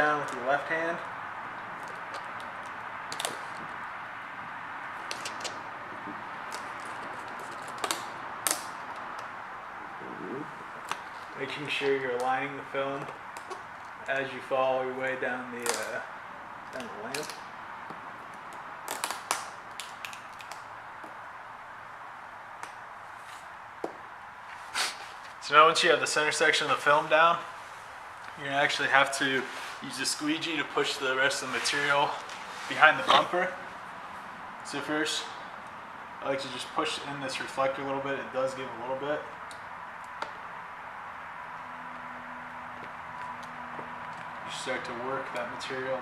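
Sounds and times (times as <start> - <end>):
film clicks and crackles: 1.6 - 3.8, 15.6 - 16.0, 16.6 - 21.2
steady hiss: 20.6 - 39.3
faint hiss: 24.5 - 33.7.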